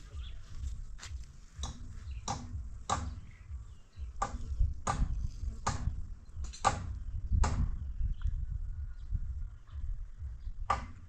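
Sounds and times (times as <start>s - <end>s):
low rumble: 0.0s - 11.0s
sharp knocks: 1.6s - 3.3s, 4.2s - 7.8s, 10.7s - 11.0s.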